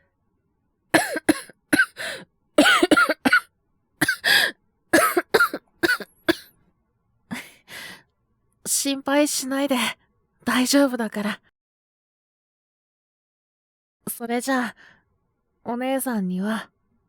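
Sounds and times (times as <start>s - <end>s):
man coughing: 1.0s - 3.4s, 4.0s - 6.4s.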